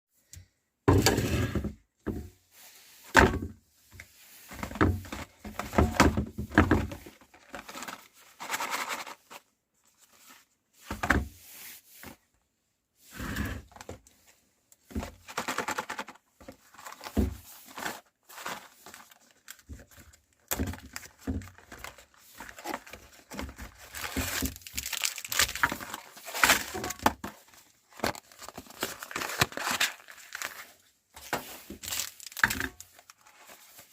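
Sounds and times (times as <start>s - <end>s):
knocks and thuds of handling: 0.9s - 2.4s, 3.1s - 3.6s, 4.5s - 7.2s, 10.8s - 11.4s, 14.8s - 17.5s
plastic wrapper crinkling and tearing: 7.3s - 9.4s, 15.3s - 27.1s, 27.8s - 33.9s.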